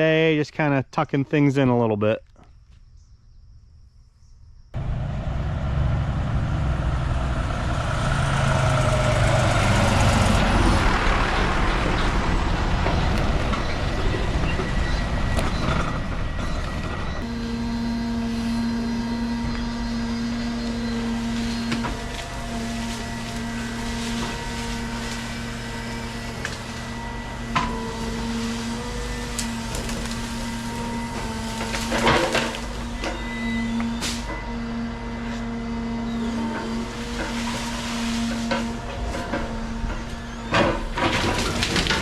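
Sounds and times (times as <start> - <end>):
diesel engine rumbling and clattering: 4.8 - 42.0.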